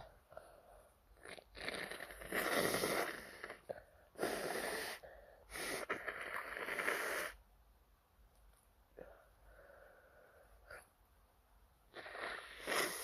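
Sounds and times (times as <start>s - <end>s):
person blowing nose loudly: 1.6s - 3.5s, 12.0s - 13.0s.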